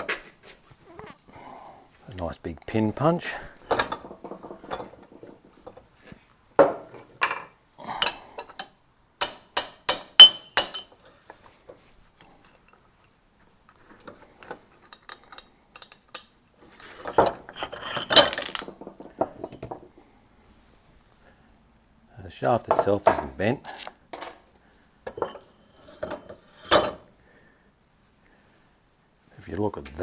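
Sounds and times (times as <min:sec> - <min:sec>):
hammer striking metal punch: 0:09.2 - 0:10.9
metal parts clattering: 0:10.2 - 0:11.0, 0:14.0 - 0:19.8.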